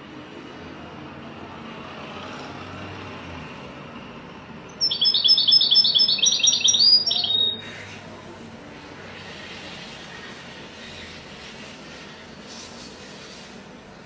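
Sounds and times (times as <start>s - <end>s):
finch singing: 4.7s - 7.8s.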